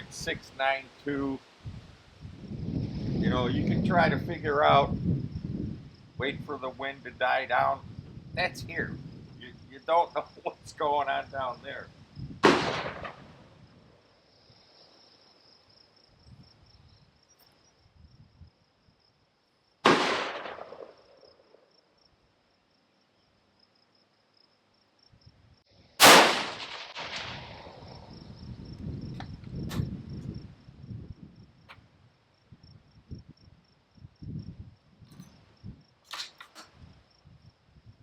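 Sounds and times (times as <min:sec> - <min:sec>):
insects droning: 0:00.0 - 0:38.0
rifle shots: 0:12.4 - 0:13.4, 0:19.8 - 0:21.1, 0:26.0 - 0:28.1.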